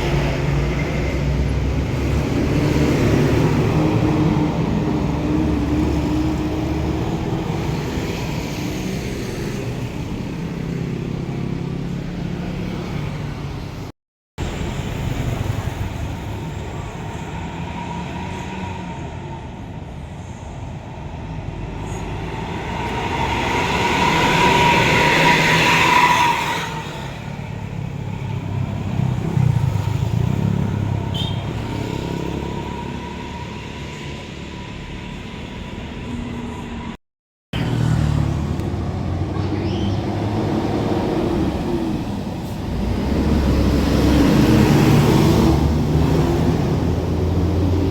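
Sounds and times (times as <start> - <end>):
road traffic passing: 0.0 - 47.9
vehicle passing close by: 21.5 - 35.6, 37.6 - 47.9.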